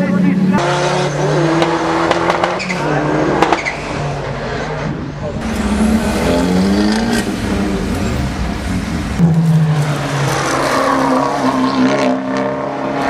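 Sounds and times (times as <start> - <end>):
race car engine running hard: 4.8 - 10.6.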